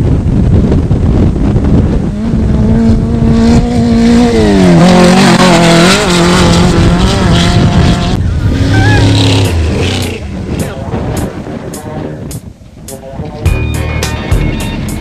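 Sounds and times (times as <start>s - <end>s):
vehicle engine passing at speed: 1.6s - 12.3s.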